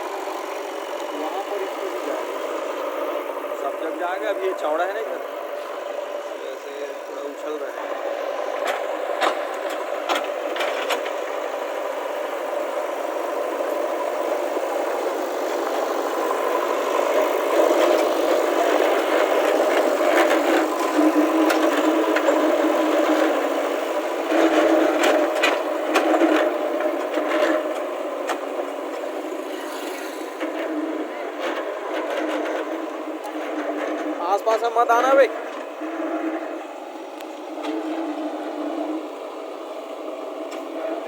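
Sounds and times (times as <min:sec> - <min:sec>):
diesel engine under load: 0:00.0 - 0:41.0
machine clanks and rattles: 0:08.6 - 0:11.3.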